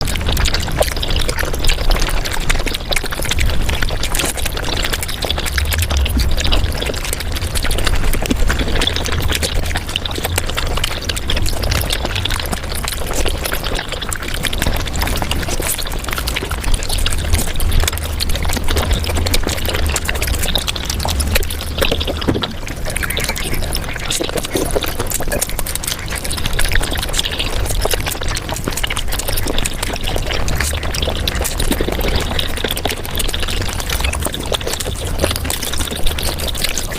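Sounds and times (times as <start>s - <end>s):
sped-up slurping and chewing: 0.0s - 36.9s
low rumble: 3.2s - 24.1s.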